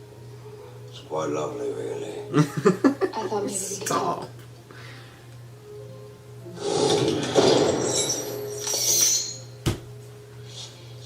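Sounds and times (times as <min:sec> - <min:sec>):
glassy clinking and crashing: 0:06.9 - 0:09.6.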